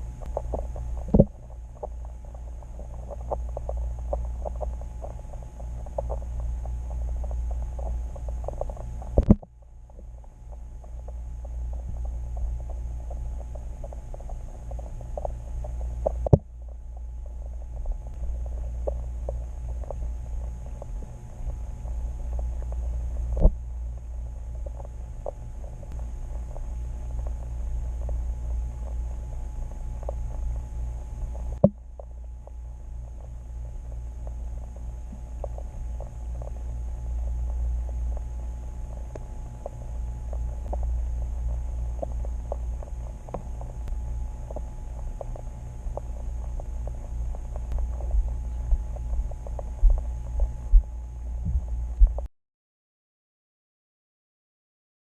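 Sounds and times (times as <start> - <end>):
faint ticks and crackles: 0.0 - 52.3
underwater low rumble: 0.0 - 52.3.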